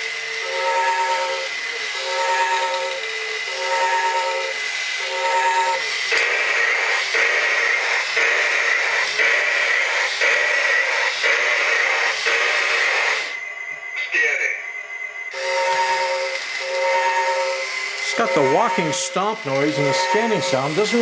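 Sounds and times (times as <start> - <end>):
toy robot beeping scanning sound: 0.0 - 21.0
toy robot hissy stomping noise: 3.4 - 13.3.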